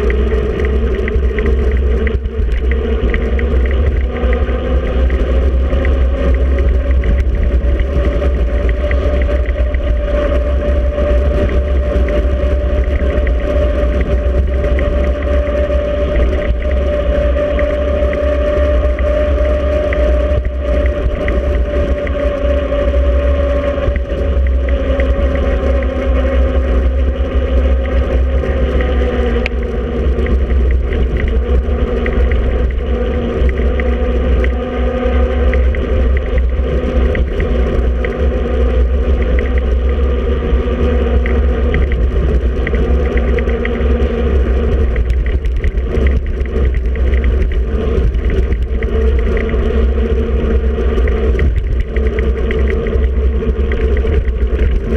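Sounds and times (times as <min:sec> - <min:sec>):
bicycle tyre hum: 0:00.0 - 0:54.9
small ticks and rattles: 0:00.0 - 0:54.9
wind rumble on microphone: 0:00.0 - 0:54.9.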